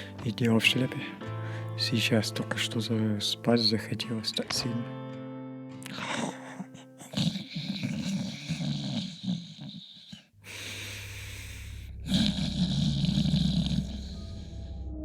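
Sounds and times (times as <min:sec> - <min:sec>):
person snoring: 0:05.8 - 0:14.9
low steady hum: 0:10.4 - 0:15.0.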